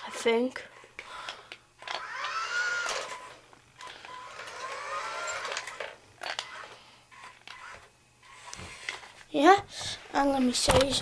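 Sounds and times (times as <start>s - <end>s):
toy car electric motor whining: 1.8s - 9.1s.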